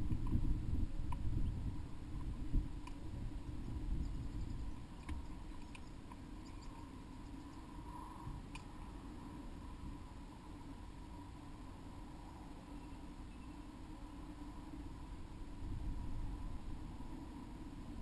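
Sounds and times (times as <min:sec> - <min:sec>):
light clicks and taps: 0:04.7 - 0:06.8.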